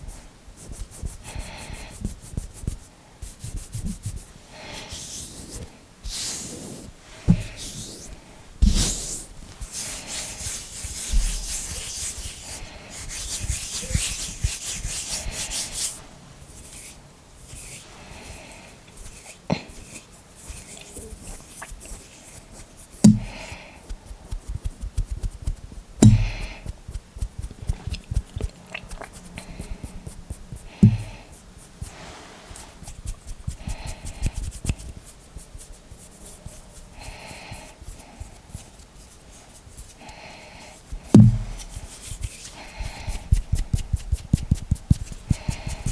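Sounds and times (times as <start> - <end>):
hands rubbing together: 1.9 - 17.9, 19.0 - 36.6, 40.7 - 45.9
sharp loud knocks: 23.0 - 23.3, 26.0 - 26.4, 41.2 - 41.6.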